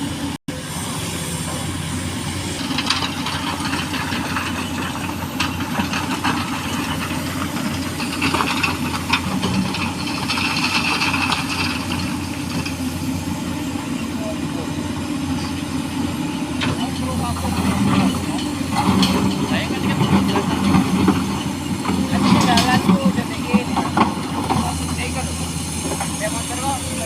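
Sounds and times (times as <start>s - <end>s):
excavator diesel engine running: 0.0s - 27.0s
knocks and clattering: 2.6s - 12.8s, 16.6s - 24.9s.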